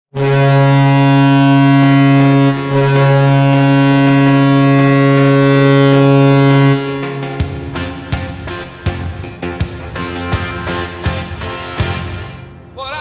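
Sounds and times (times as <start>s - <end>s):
goal horn blasting: 0.1s - 8.9s.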